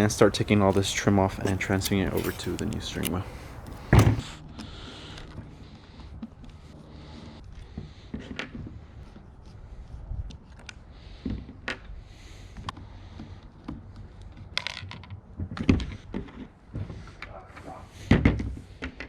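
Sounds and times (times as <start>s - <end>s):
light clicks and knocks of handling: 0.0s - 4.2s.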